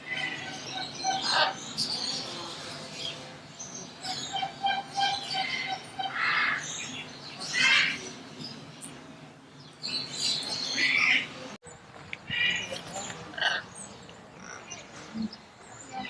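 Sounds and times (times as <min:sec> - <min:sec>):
parrot harsh calls: 0:04.1 - 0:06.6.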